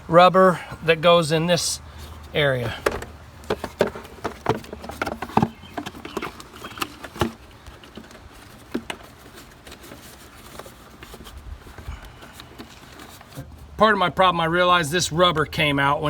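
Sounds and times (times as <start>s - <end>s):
plastic box clicking and knocking: 2.8s - 9.0s.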